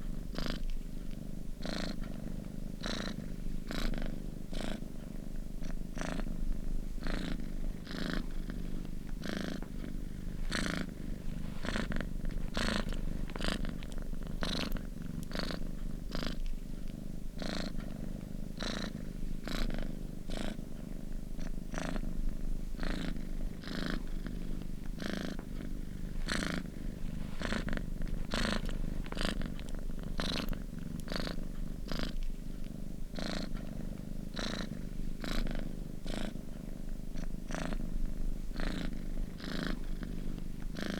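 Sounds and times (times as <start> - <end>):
cat purring: 0.0 - 40.9.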